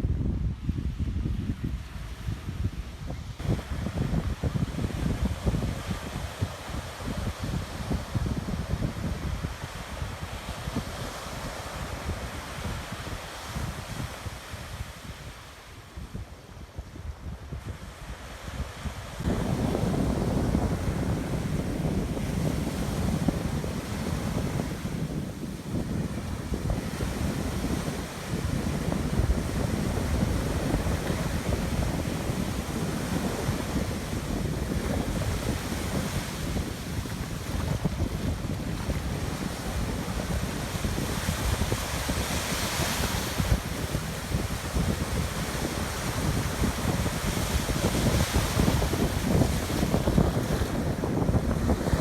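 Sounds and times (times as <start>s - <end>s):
ocean surf on sandy beach: 0.0s - 52.0s
wind buffeting microphone: 0.0s - 52.0s
hiss of wave running up sand: 17.6s - 51.6s.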